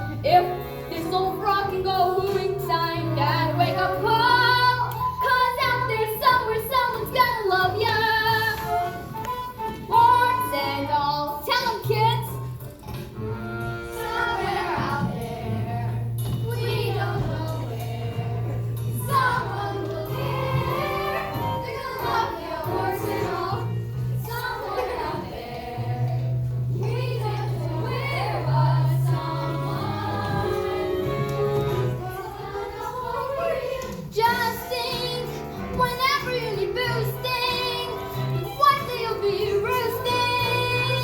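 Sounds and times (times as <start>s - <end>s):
musical accompaniment: 0.0s - 41.0s
children singing: 13.8s - 41.0s.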